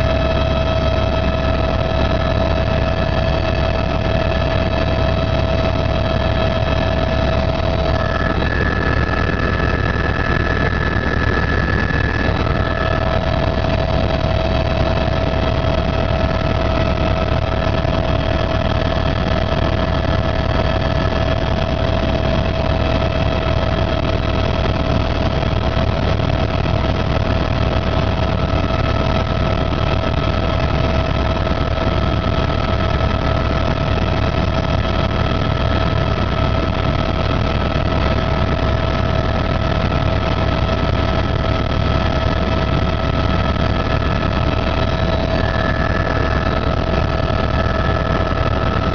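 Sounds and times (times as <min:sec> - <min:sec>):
whining tones: 0:00.0 - 0:22.0, 0:43.4 - 0:48.9
helicopter rotor and engine drone: 0:00.0 - 0:48.9.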